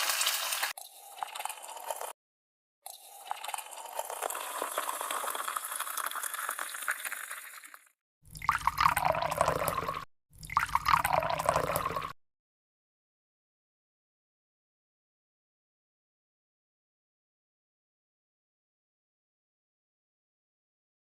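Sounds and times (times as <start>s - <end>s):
liquid being poured: 0.0s - 2.2s, 2.9s - 12.2s
crackly clicking liquid noise: 0.6s - 2.2s, 2.8s - 12.2s.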